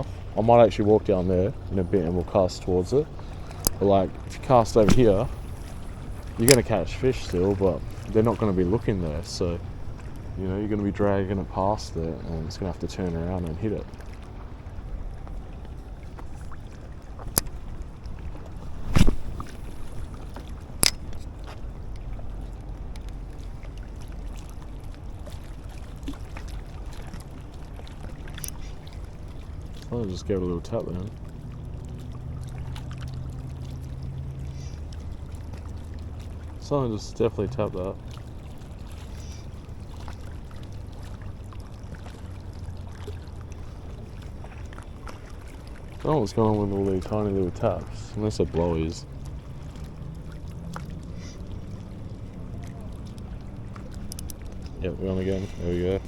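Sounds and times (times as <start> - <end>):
water rumbling: 0.0 - 56.0
wind: 0.0 - 56.0
faint ticks: 20.3 - 23.2, 52.7 - 54.8
low rumble: 40.6 - 56.0.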